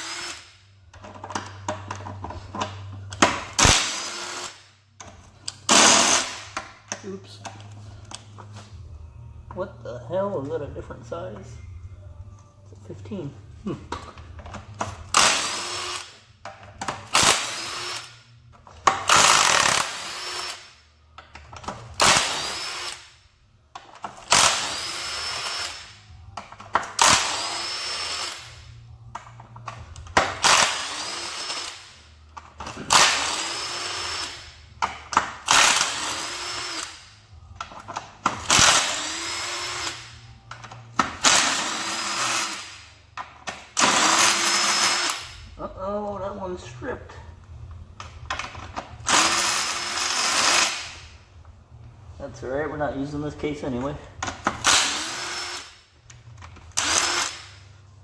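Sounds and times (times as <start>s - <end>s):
power tool spinning bolts: 5.7s - 6.5s, 18.9s - 20.7s, 21.6s - 23.1s, 24.1s - 26.0s, 26.7s - 28.6s, 30.3s - 32.0s, 32.6s - 37.1s, 38.0s - 40.2s, 41.2s - 42.9s, 43.5s - 45.4s, 48.5s - 51.0s, 54.4s - 55.8s, 56.6s - 57.6s.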